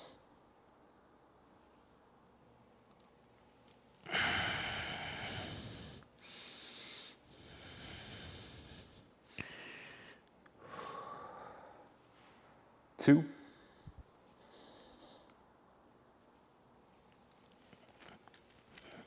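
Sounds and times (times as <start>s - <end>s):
man breathing: 4.1s - 12.6s, 13.4s - 15.4s.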